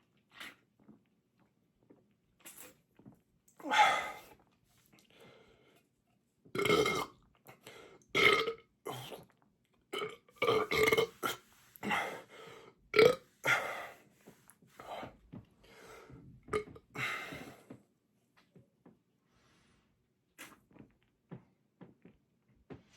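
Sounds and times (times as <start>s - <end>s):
man belching: 6.6s - 7.1s, 8.2s - 9.2s, 10.0s - 11.3s, 13.0s - 13.2s.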